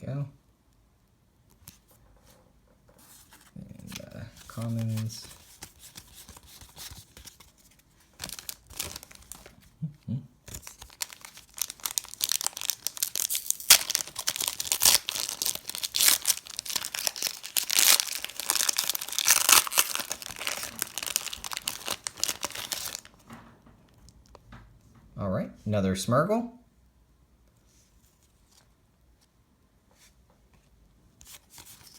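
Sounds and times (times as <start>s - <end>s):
card pack wrapper tearing and crinkling: 3.1s - 9.7s, 10.5s - 23.2s.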